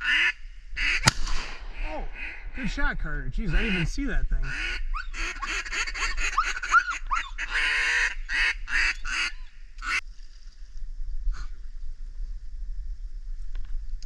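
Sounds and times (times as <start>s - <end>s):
raspy duck quacks: 1.8s - 2.5s, 3.6s - 10.0s.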